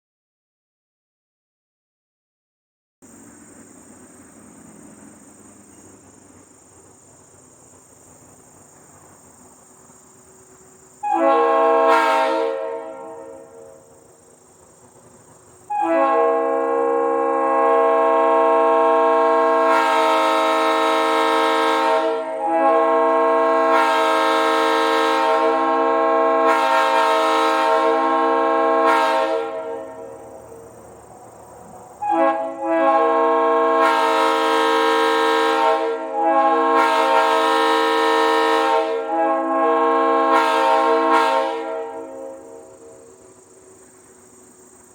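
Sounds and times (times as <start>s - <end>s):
locomotive air horn blasts: 11.0s - 14.0s, 15.7s - 30.2s, 32.0s - 43.1s.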